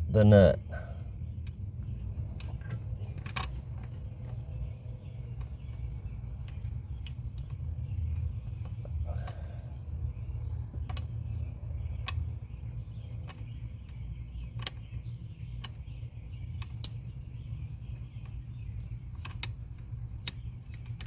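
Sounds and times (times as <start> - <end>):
steady low rumble: 0.0 - 21.0
light metallic clicks and taps: 10.7 - 11.1, 18.2 - 21.0.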